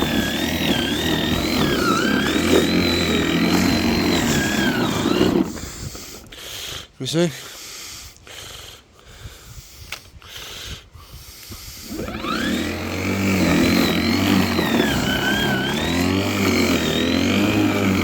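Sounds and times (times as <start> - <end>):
lawnmower electric motor whine: 0.0 - 6.7, 11.4 - 18.0.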